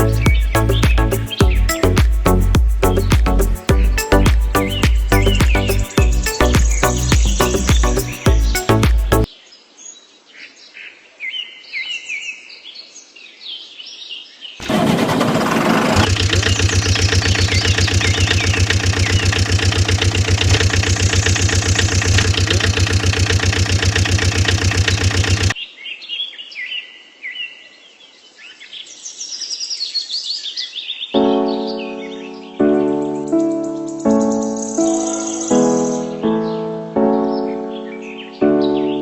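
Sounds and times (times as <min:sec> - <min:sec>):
birds chirping: 0:00.0 - 0:09.3, 0:30.5 - 0:39.0
engine running with fast pulsing: 0:14.6 - 0:25.6.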